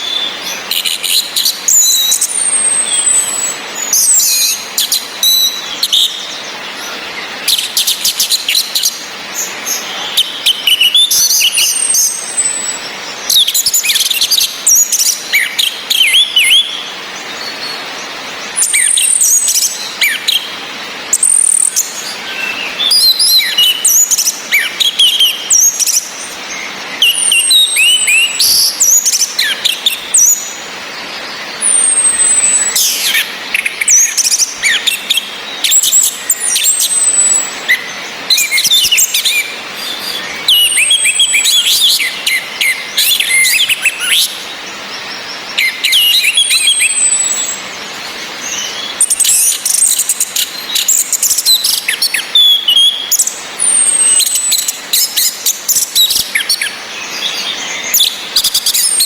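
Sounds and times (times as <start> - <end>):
rain hiss: 0.0 - 59.0.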